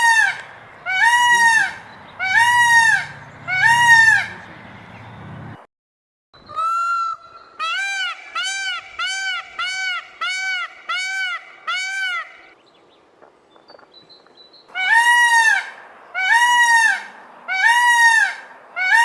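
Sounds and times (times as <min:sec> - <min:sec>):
peacock calling: 0:00.0 - 0:05.3, 0:06.4 - 0:12.6, 0:14.6 - 0:19.0.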